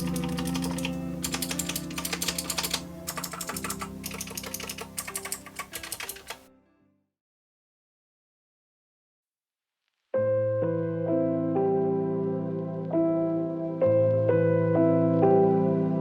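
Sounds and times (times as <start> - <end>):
mechanical keyboard typing: 0.0 - 6.4.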